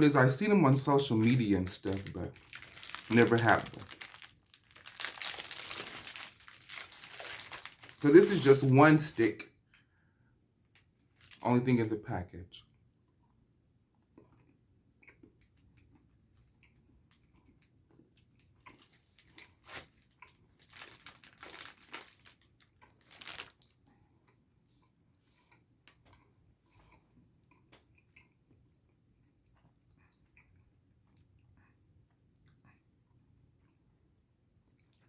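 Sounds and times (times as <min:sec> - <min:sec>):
candy wrapper crinkling: 0:00.4 - 0:09.4, 0:11.2 - 0:11.7, 0:18.8 - 0:23.8
chewing soft candy: 0:00.7 - 0:09.9, 0:12.6 - 0:35.0.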